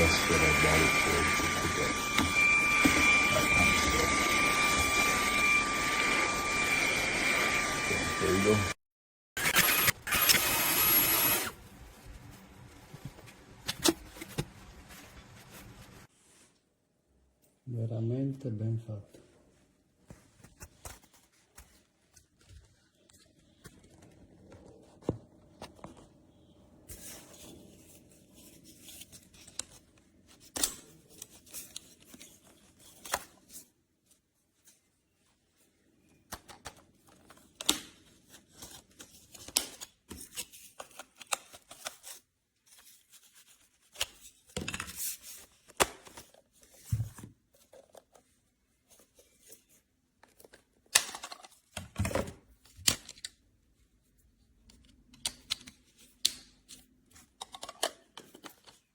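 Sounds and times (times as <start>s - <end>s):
objects being handled: 10.8s - 16.7s, 19.2s - 58.9s.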